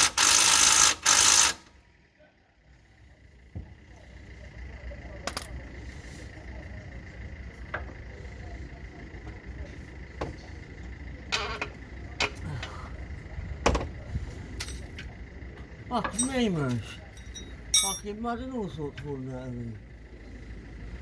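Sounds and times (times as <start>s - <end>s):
steady low rumble: 12.8s - 18.8s
tools knocking and clinking: 14.6s - 15.0s, 16.0s - 18.1s
short rattling: 16.1s - 18.1s.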